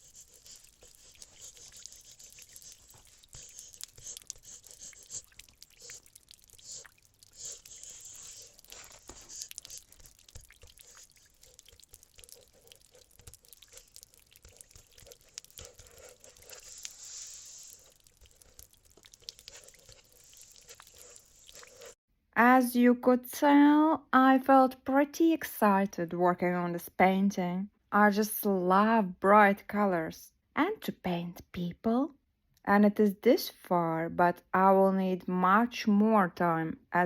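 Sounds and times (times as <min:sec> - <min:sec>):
paintbrush scratching on canvas: 0:00.0 - 0:22.0.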